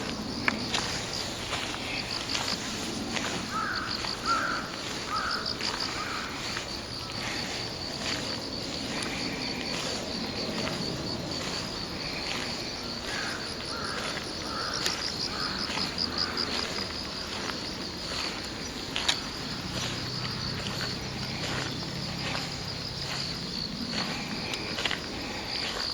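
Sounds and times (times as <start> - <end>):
insects chirping in pulsed trills: 0.0 - 25.9
crows cawing: 3.2 - 8.2, 12.0 - 17.5.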